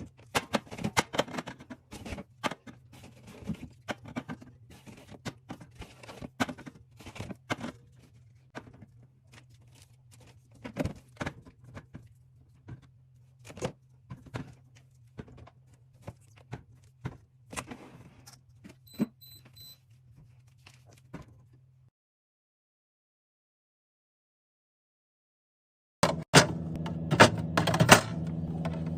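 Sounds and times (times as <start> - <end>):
low hum: 26.0 - 28.9.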